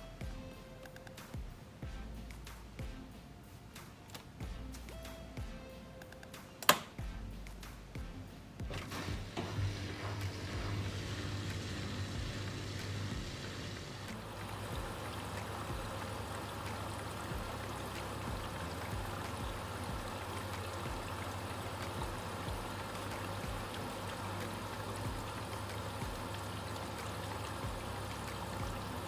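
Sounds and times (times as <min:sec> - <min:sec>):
water rushing into washing machine: 0:08.7 - 0:29.0.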